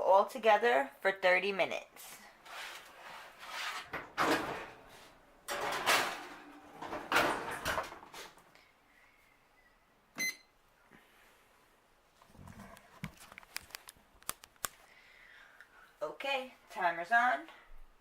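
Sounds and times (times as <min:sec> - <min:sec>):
oven door opening and shutting: 0:03.8 - 0:04.8, 0:05.5 - 0:08.2
short electronic beep: 0:10.2 - 0:10.5.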